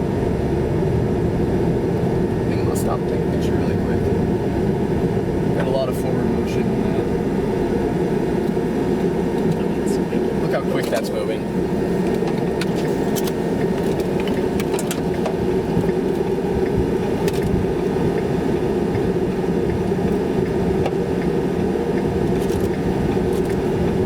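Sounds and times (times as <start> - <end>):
car road and engine noise: 0.0 - 24.0.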